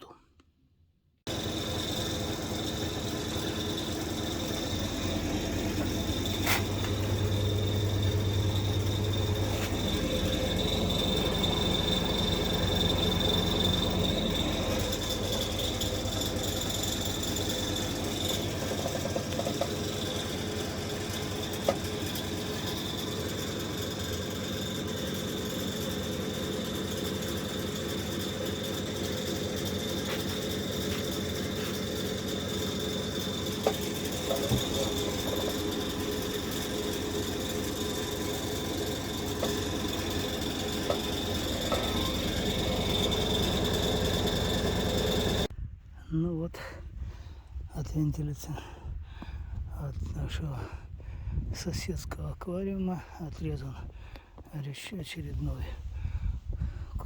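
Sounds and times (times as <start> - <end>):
angle grinder cutting steel: 1.3 - 45.5.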